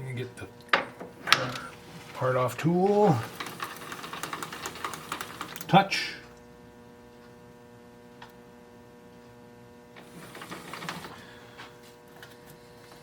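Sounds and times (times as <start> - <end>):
metal lathe humming: 10.0 - 11.7.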